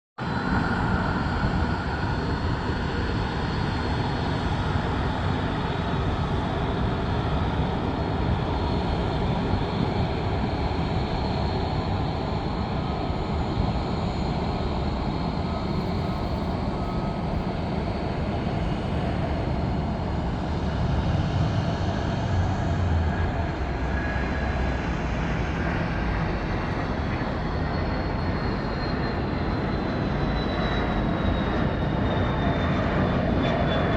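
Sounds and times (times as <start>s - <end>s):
jet engines with high whine: 0.2s - 33.9s.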